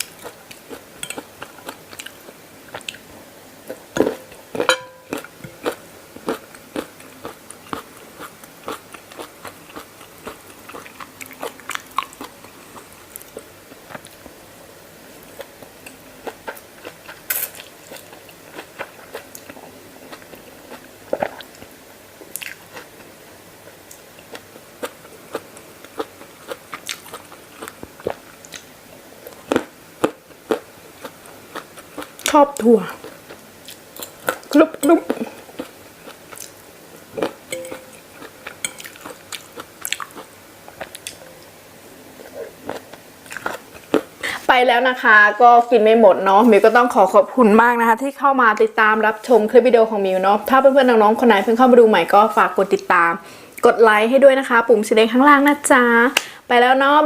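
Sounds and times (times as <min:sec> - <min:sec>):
person chewing crunchy peanuts: 0:03.7 - 0:13.5, 0:24.0 - 0:41.2, 0:42.2 - 0:44.2.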